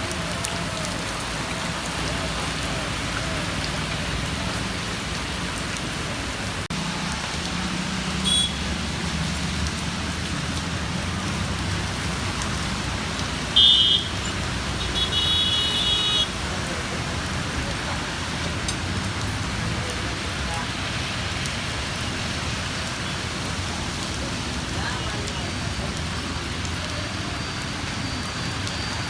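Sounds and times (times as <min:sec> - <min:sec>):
heavy rain falling: 0:00.0 - 0:29.0
low rumble of road traffic: 0:00.0 - 0:29.0.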